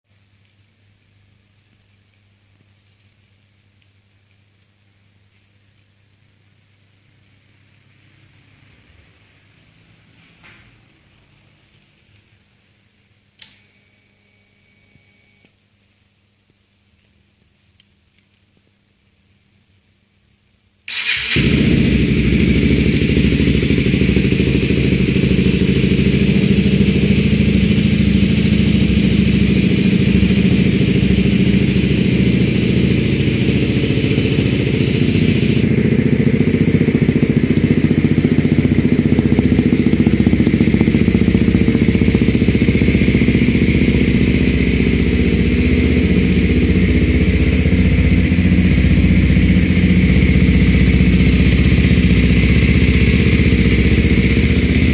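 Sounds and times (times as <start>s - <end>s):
motorcycle engine starting and idling: 20.9s - 54.9s.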